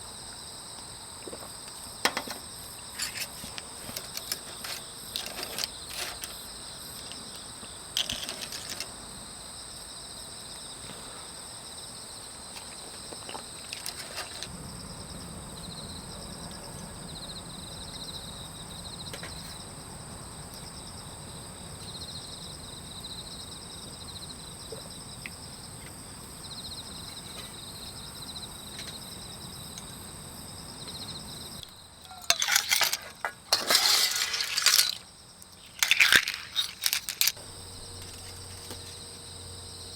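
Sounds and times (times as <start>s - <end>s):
crickets trilling: 0.0s - 39.9s
low steady hum: 35.8s - 39.9s.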